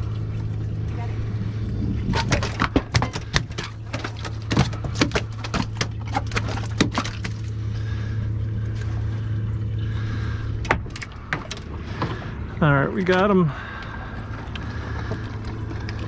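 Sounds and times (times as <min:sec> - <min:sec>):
boat motor humming: 0:00.0 - 0:16.0
sharp clicks and knocks: 0:02.2 - 0:07.5, 0:10.6 - 0:12.2.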